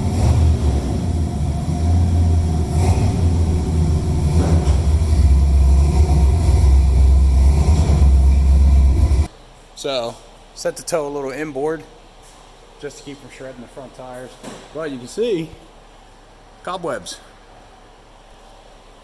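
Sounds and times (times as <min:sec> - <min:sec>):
pickup truck engine rumbling: 0:00.0 - 0:09.3.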